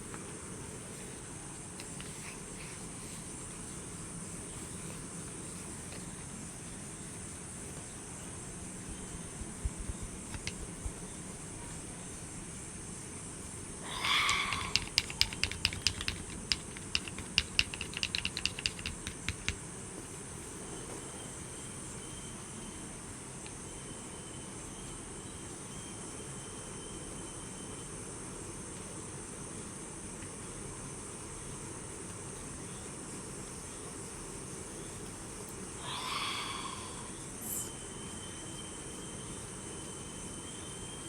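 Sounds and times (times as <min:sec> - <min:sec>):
light rain and wind: 0:00.0 - 0:41.0
sharp clicks or taps: 0:09.7 - 0:11.0, 0:14.2 - 0:19.6.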